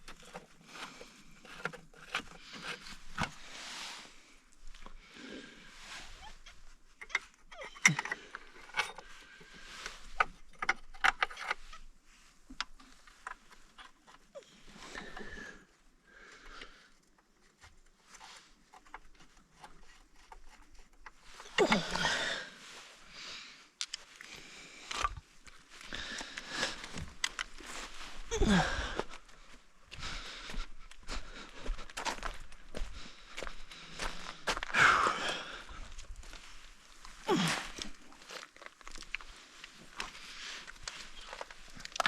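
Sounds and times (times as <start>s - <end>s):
metal tools clinking and scraping: 7.0s - 9.2s.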